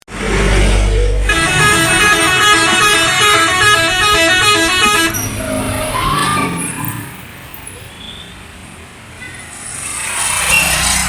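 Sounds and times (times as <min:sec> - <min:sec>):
bus musical horn playing a tune: 0:01.2 - 0:06.6.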